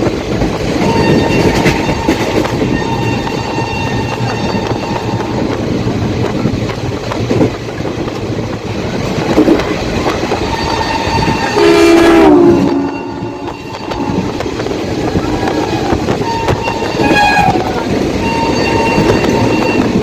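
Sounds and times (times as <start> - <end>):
train wheels clickety-clack: 0.0 - 20.0
locomotive horn blast: 0.8 - 5.6, 10.5 - 14.6, 15.2 - 20.0.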